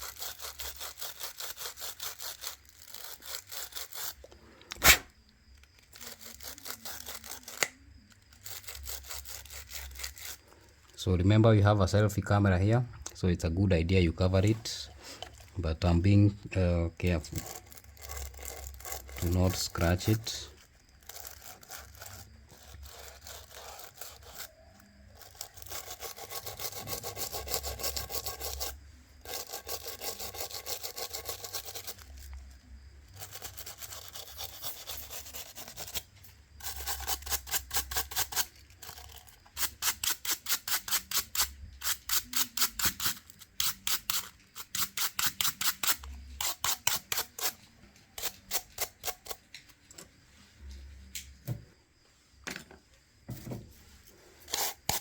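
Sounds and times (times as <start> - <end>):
rubbing strokes on a smartphone: 0.0 - 5.0, 6.0 - 7.6, 21.0 - 24.6, 25.2 - 32.3, 33.2 - 38.5.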